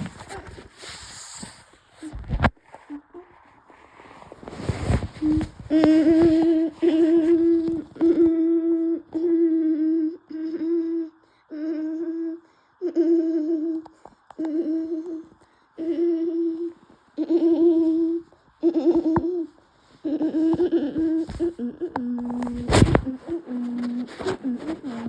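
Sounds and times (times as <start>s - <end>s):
voice-like hooting hum: 5.2s - 25.0s.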